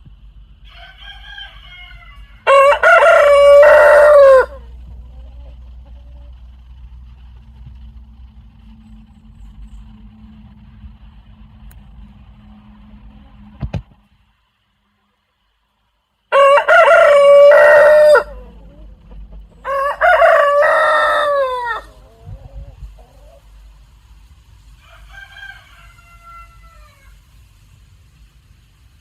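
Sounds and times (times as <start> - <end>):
rooster crowing: 0.6 - 5.6, 16.3 - 22.6, 24.8 - 27.2.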